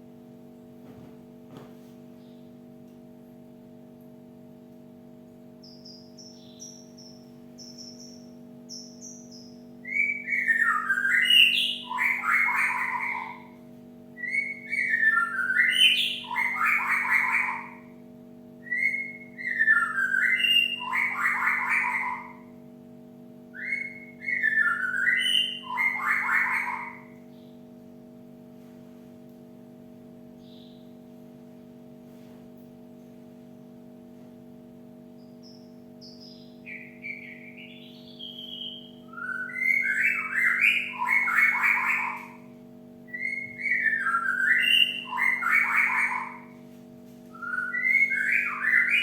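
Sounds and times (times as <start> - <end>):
steady low hum: 0.0 - 49.0
faint high bird chirps: 5.6 - 13.6, 14.2 - 18.0, 18.6 - 22.6, 23.6 - 27.7, 30.3 - 31.0, 35.1 - 46.6, 47.3 - 49.0
bird whistling and buzzy chatter: 5.6 - 18.0, 18.6 - 22.6, 23.5 - 27.7, 35.1 - 46.7, 47.3 - 49.0.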